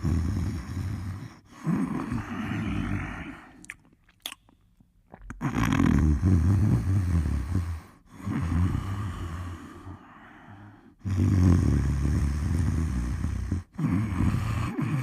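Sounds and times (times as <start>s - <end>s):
deep rattling snores: 0.0s - 3.4s, 5.4s - 9.8s, 11.0s - 15.0s.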